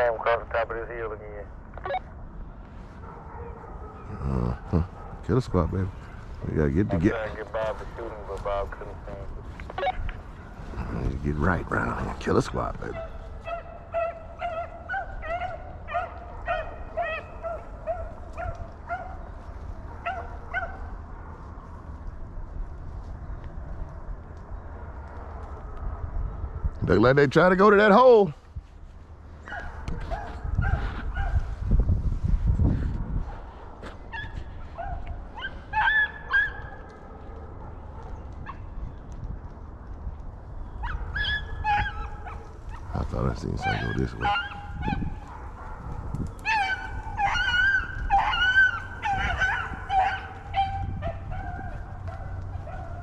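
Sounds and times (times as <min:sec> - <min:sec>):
hound yelping: 0:09.8 - 0:10.1, 0:12.9 - 0:19.3, 0:19.9 - 0:21.0, 0:34.1 - 0:38.7, 0:40.7 - 0:53.0.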